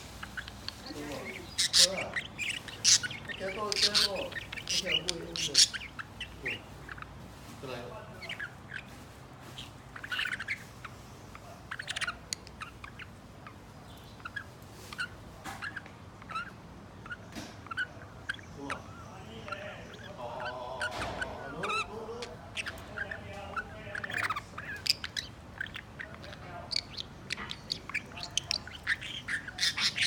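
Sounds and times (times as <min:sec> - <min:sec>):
bird warbling: 0:00.0 - 0:30.0
birds chirping: 0:00.0 - 0:30.0.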